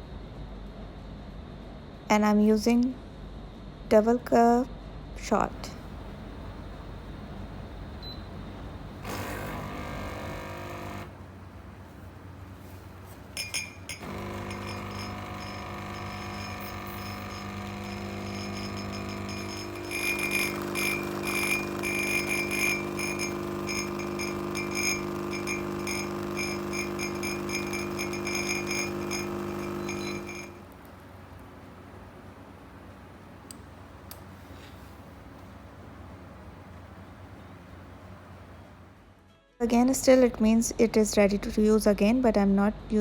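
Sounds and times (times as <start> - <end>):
espresso machine pump buzzing: 5.8 - 11.8, 12.9 - 30.8.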